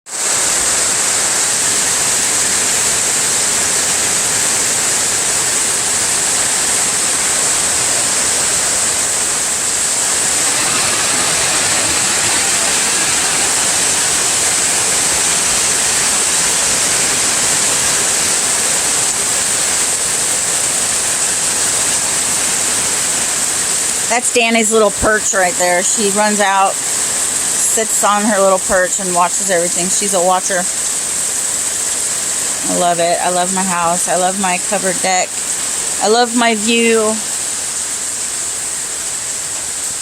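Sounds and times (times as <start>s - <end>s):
heavy rain on metal roof: 0.1s - 40.0s.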